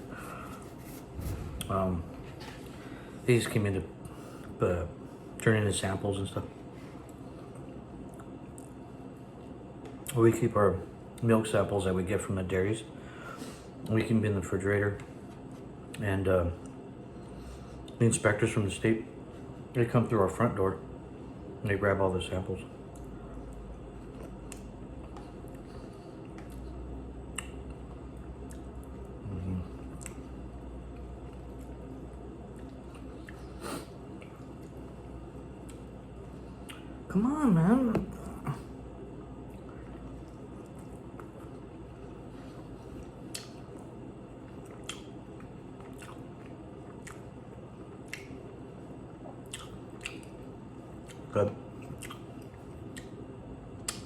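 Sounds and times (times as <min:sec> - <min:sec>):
steady low hum: 0:00.0 - 0:54.0
short low sound: 0:01.0 - 0:03.2
person chewing food: 0:22.9 - 0:34.9, 0:35.5 - 0:37.0, 0:38.4 - 0:53.2.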